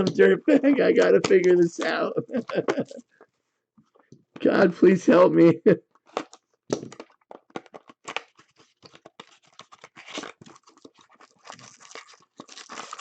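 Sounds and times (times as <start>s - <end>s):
wrapper crinkling and tearing: 6.1s - 13.0s.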